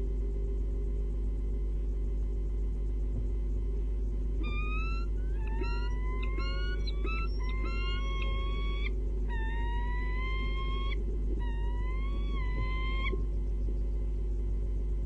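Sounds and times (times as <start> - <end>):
low electrical hum: 0.0 - 15.0
bird squealing calls: 4.4 - 13.3.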